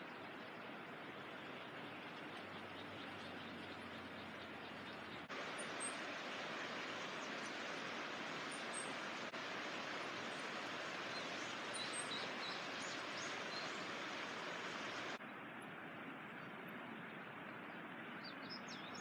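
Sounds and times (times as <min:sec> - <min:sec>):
rural outdoor hiss: 0:00.0 - 0:19.0
faint bird chirps: 0:11.1 - 0:13.9.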